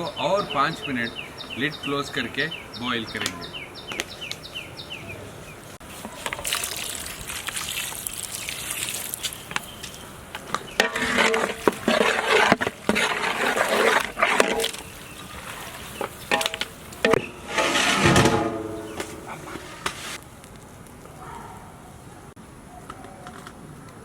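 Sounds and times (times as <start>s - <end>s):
water pouring into a pot: 6.4s - 9.2s.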